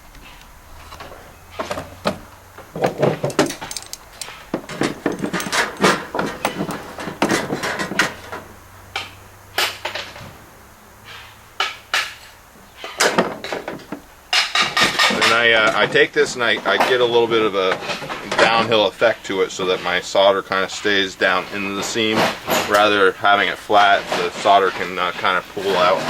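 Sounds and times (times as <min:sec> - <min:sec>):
sheet copper knocks and rattles: 0:01.6 - 0:08.5, 0:13.0 - 0:15.8.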